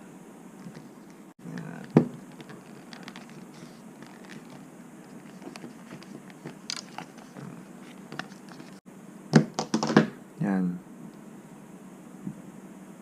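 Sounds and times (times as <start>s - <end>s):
steady low hum: 0.0s - 13.0s
phone handling clicks and rustles: 0.6s - 8.8s.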